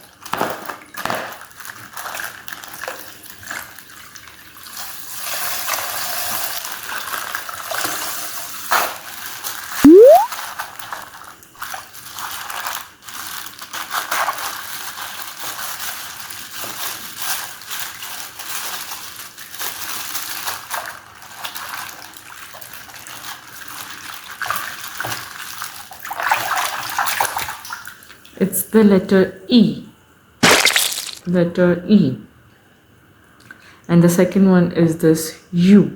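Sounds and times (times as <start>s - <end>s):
slime squelching by hand: 30.4s - 31.3s.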